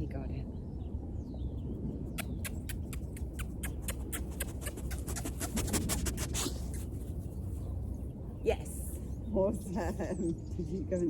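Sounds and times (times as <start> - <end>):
lip-smacking kissing noises: 2.1 - 6.9.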